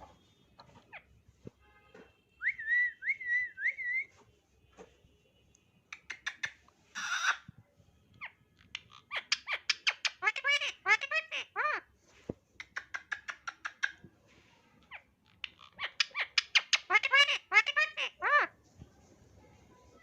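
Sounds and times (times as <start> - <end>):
parrot whistling: 2.4 - 4.1
harsh parrot noise: 6.0 - 7.5.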